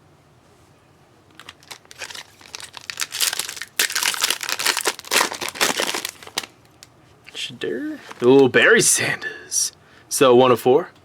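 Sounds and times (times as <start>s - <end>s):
card pack wrapper crinkling: 1.3s - 6.9s.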